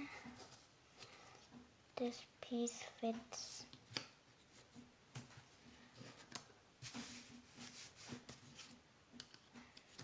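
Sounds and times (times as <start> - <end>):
wooden puzzle pieces clicking: 9.2 - 10.0.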